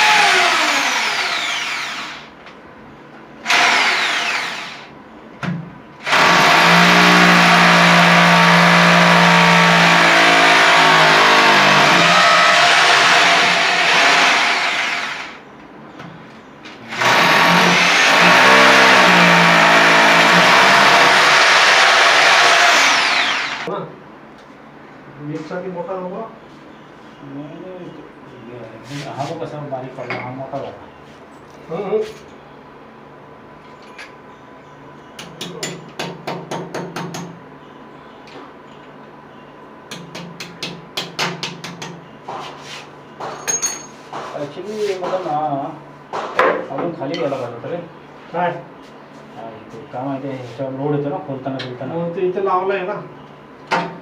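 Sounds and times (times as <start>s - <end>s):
electric drill running: 0.0s - 2.3s, 3.4s - 4.9s, 6.0s - 15.4s, 16.9s - 23.7s.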